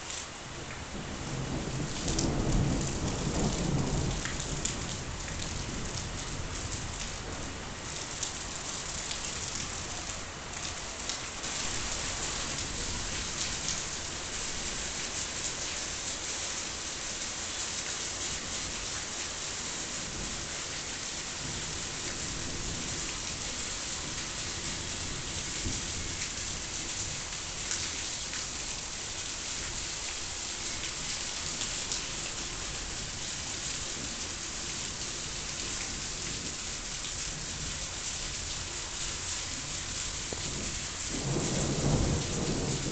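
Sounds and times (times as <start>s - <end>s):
heavy rain downpour: 0.0s - 42.9s
low thunder rumble: 0.9s - 7.5s, 40.2s - 42.9s.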